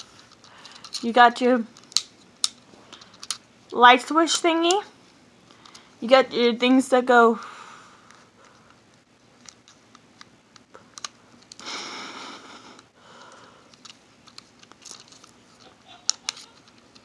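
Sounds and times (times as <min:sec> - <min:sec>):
fidget cube clicking: 0:13.7 - 0:17.0.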